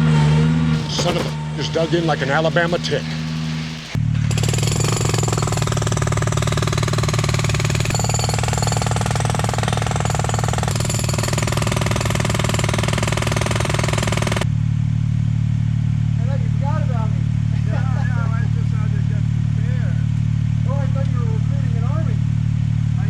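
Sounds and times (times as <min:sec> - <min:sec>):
low engine drone: 0:00.0 - 0:04.0
rapid mechanical hammering: 0:00.8 - 0:14.4.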